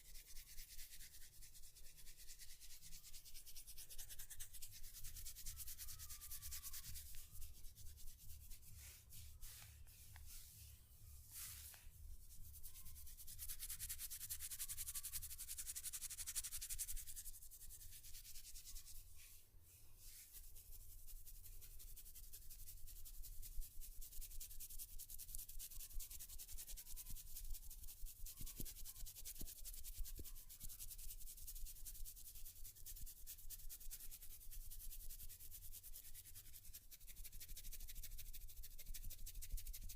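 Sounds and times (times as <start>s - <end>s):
rubbing and scratching on hair: 0.0s - 19.4s, 20.0s - 39.9s.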